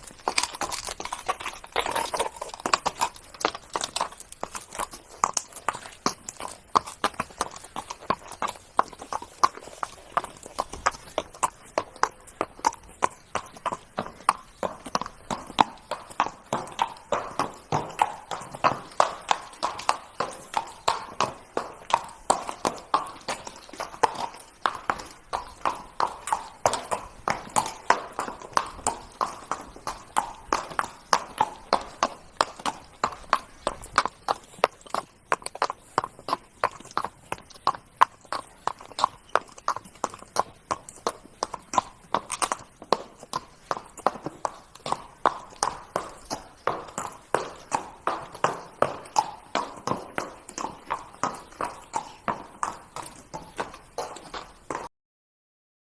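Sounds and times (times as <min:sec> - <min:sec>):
horse hooves trotting: 0:00.0 - 0:54.9.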